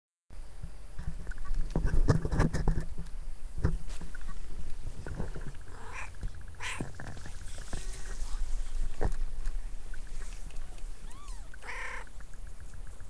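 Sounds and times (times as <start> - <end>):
rustling: 1.0 - 13.0
kittens mewing: 5.6 - 7.0, 10.6 - 12.3.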